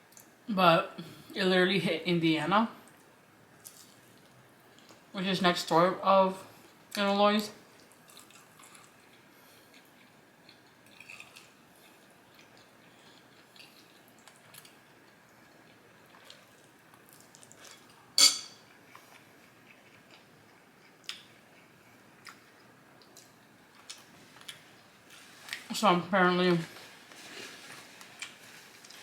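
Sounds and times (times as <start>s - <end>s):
cutlery taps: 18.2s - 18.6s
fork clinking on plate: 18.2s - 18.6s.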